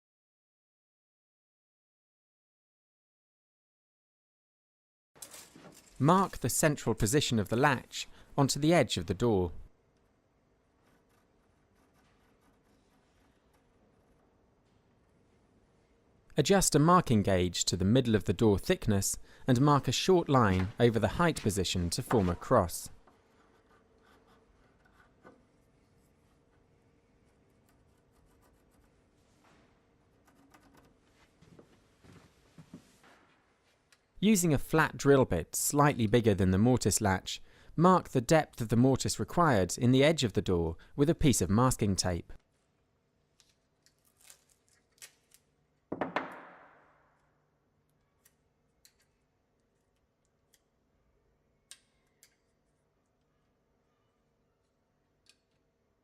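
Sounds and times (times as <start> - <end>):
faint scratching on wood: 10.6 - 14.4, 23.1 - 29.4.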